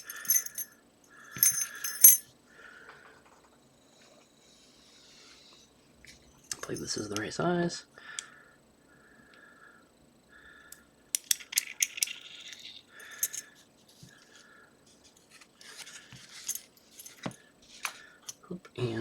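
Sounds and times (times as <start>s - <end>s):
metal lock parts clicking: 11.2s - 12.6s.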